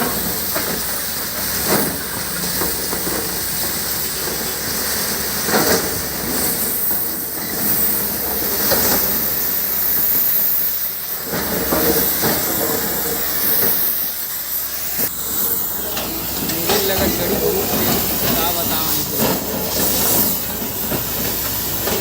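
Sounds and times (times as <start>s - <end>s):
backhoe loader rumbling: 0.0s - 10.2s, 10.8s - 22.0s.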